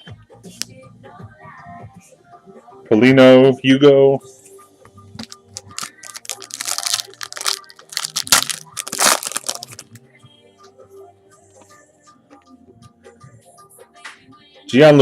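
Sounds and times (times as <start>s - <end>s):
foil wrapper tearing and crinkling: 5.2s - 10.0s.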